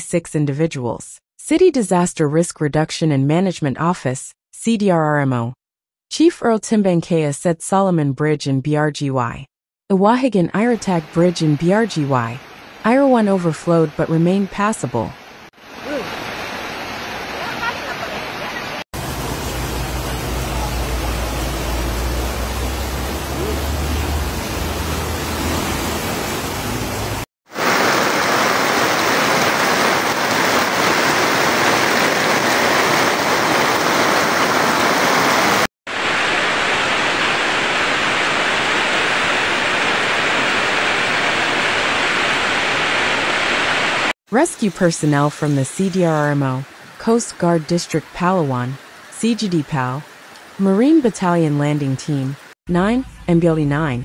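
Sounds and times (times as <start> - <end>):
rushing floodwater: 15.6 - 44.1.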